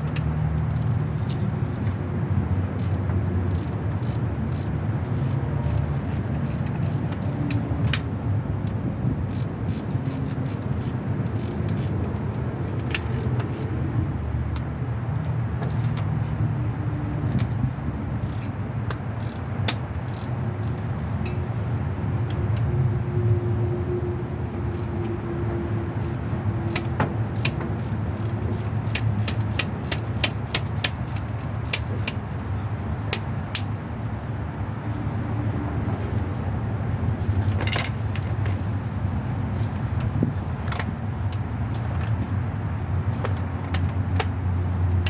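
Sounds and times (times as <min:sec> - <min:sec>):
sharp metallic ratchet clicks: 0:00.1 - 0:01.6, 0:02.6 - 0:08.1, 0:09.3 - 0:13.8, 0:18.2 - 0:21.4, 0:24.7 - 0:25.2, 0:26.6 - 0:32.5.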